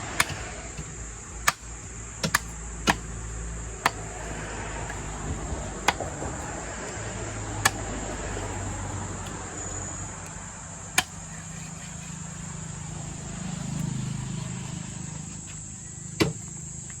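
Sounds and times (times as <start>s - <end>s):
sharp knocks: 0.1s - 3.2s.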